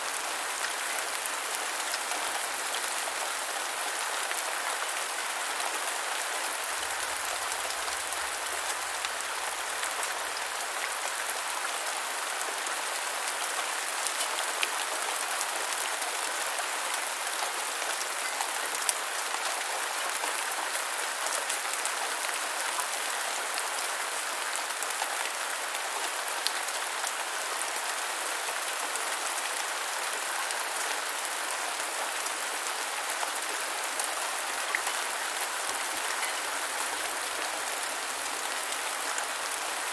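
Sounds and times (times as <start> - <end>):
light rain hiss: 0.0 - 31.1.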